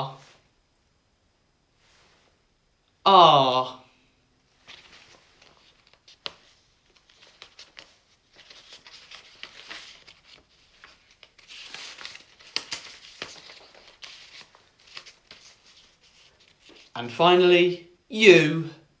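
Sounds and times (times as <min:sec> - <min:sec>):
rustling handling noise: 0:04.4 - 0:17.0.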